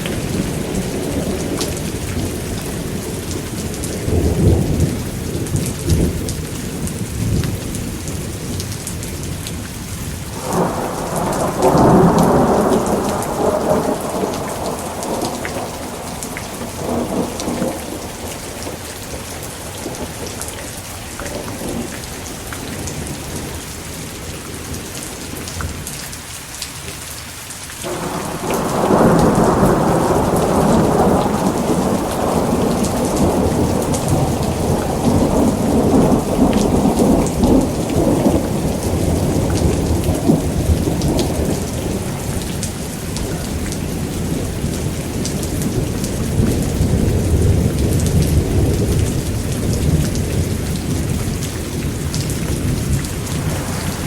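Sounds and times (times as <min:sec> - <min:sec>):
steady rain: 0:00.0 - 0:54.0
thunder rolling: 0:10.4 - 0:21.9, 0:27.8 - 0:54.0.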